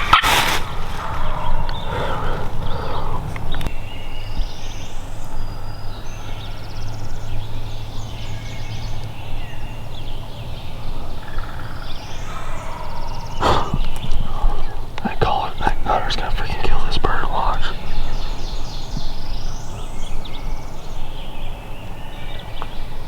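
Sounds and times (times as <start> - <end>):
turkey gobbling: 0.0 - 3.7
songbirds chirping and trilling: 0.0 - 23.0.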